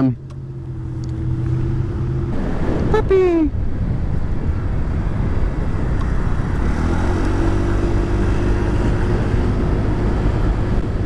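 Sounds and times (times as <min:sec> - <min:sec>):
steady droning tone: 0:00.0 - 0:02.8
wind on microphone: 0:00.4 - 0:11.0
motorcycle engine running: 0:03.5 - 0:11.0.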